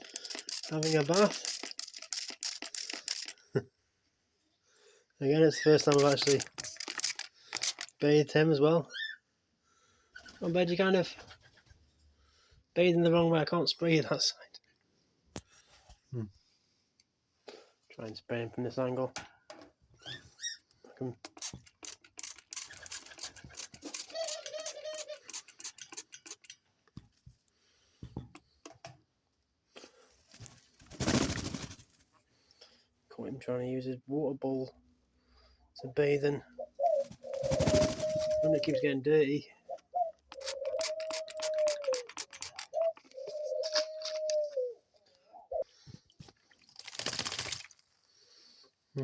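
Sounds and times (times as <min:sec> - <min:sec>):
wings fluttering: 0:00.0 - 0:03.4, 0:05.6 - 0:07.9, 0:21.3 - 0:26.6, 0:30.2 - 0:32.2, 0:36.8 - 0:38.8, 0:40.3 - 0:44.7, 0:46.7 - 0:47.8
dove cooing: 0:36.6 - 0:38.9, 0:39.6 - 0:45.7
bird splashing in water: 0:46.3 - 0:47.9.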